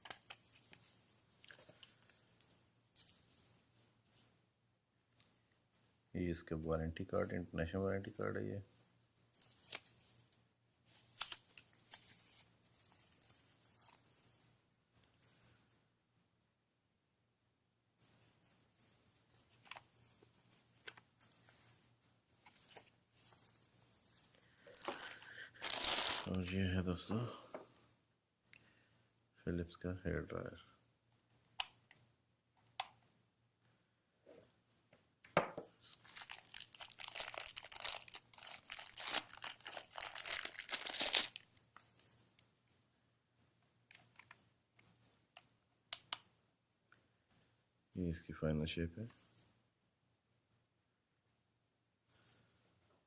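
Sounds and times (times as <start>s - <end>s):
packaging rustling: 24.1s - 26.6s, 36.0s - 41.5s
plastic wrapping crinkling: 24.1s - 26.6s, 35.9s - 42.1s.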